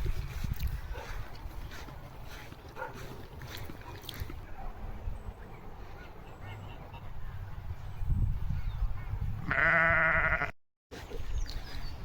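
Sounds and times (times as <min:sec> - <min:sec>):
wind rumble on microphone: 0:00.0 - 0:02.4, 0:07.0 - 0:10.5
bleating farm animal call: 0:09.4 - 0:10.6.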